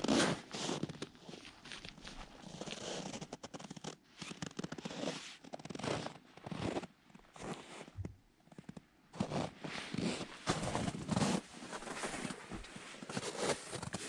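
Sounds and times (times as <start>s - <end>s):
rustling and scuffing: 0.0s - 3.2s, 9.3s - 14.0s.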